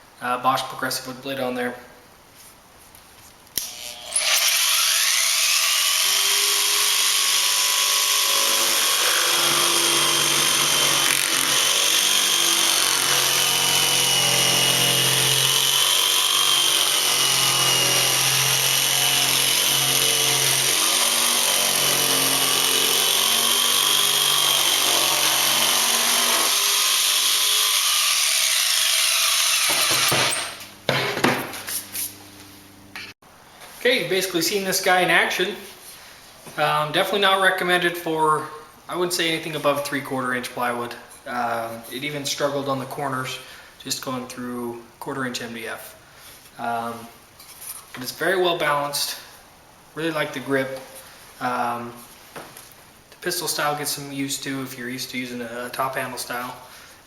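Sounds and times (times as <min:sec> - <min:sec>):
jigsaw motor whining: 0:03.6 - 0:30.6.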